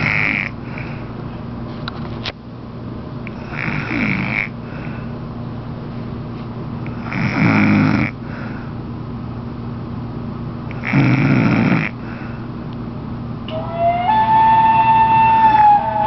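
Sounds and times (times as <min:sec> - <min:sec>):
steady low hum: 0:00.0 - 0:16.0
woman snoring loudly: 0:03.4 - 0:04.5, 0:07.0 - 0:08.1, 0:10.8 - 0:12.0.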